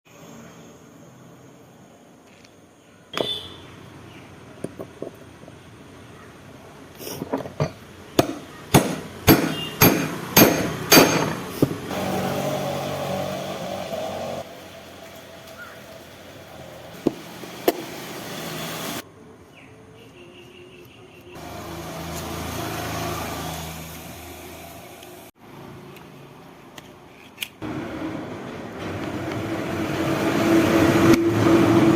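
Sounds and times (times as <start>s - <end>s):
steady rough mechanical noise: 7.3s - 19.0s
sharp metal taps: 7.6s - 11.7s.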